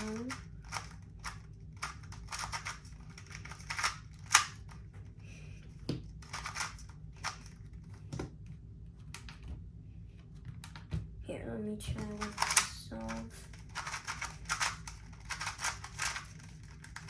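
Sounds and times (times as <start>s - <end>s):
puzzle cube layers clicking: 0.0s - 4.8s, 6.2s - 7.6s, 12.1s - 17.0s.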